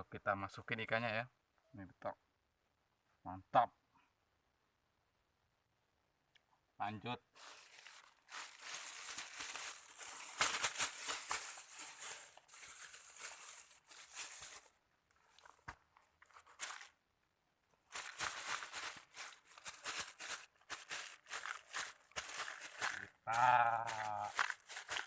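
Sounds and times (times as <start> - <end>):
close rustling and crinkling: 7.3 - 17.0, 17.8 - 25.0.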